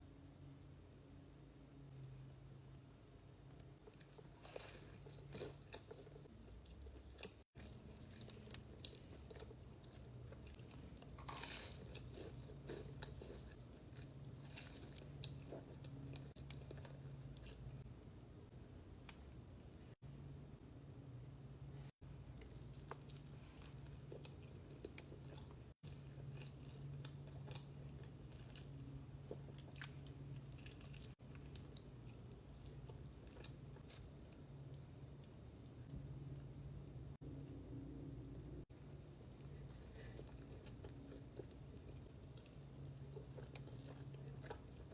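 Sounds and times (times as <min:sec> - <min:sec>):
faint low hum: 0:00.0 - 0:44.9
person chewing and biting: 0:03.9 - 0:17.8, 0:22.4 - 0:34.4, 0:39.4 - 0:44.9.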